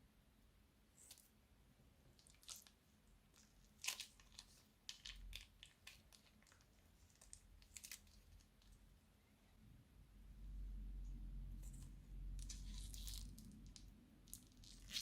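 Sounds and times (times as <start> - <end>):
crunchy slime crackling: 3.4 - 8.5, 12.4 - 15.0.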